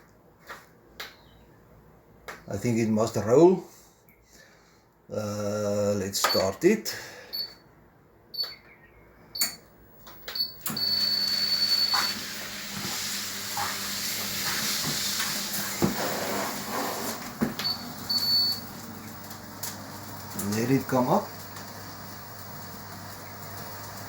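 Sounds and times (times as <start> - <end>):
treadmill console beeping: 7.3 - 7.6, 8.4 - 9.6, 10.2 - 12.6, 17.1 - 19.4
treadmill motor humming: 10.3 - 24.0.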